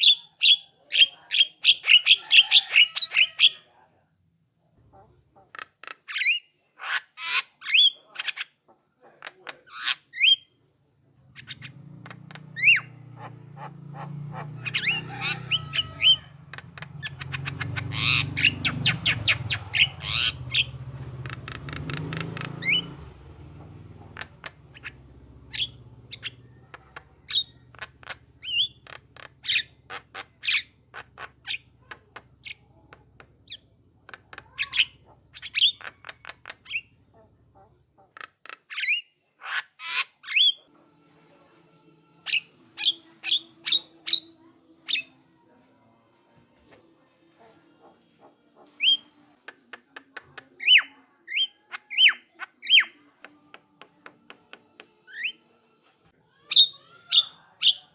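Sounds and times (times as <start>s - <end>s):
fast bird chattering: 0.0s - 3.6s, 4.8s - 10.5s, 11.2s - 40.6s, 48.2s - 53.5s, 56.5s - 57.9s
myna whistles and squawks: 12.6s - 16.3s.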